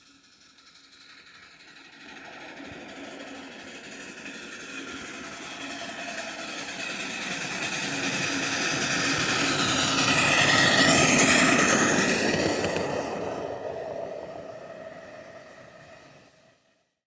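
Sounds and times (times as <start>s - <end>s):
miniature train wheels on track: 0.0s - 16.5s.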